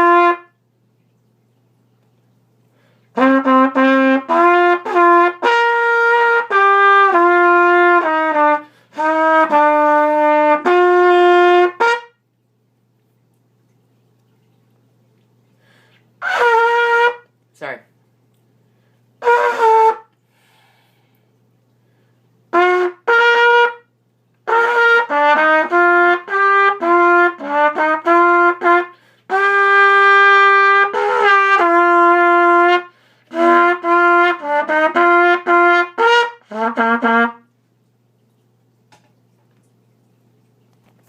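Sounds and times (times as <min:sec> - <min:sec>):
solo trumpet melody: 0:00.0 - 0:00.7, 0:03.1 - 0:12.3, 0:16.2 - 0:17.4, 0:19.2 - 0:20.2, 0:22.4 - 0:37.6.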